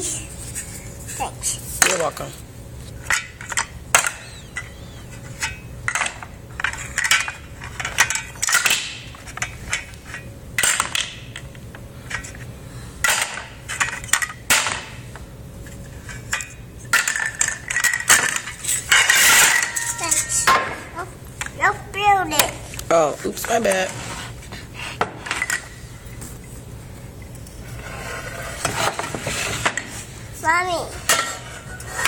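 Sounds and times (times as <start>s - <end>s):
toy pots and pans clattering: 16.3s - 20.8s.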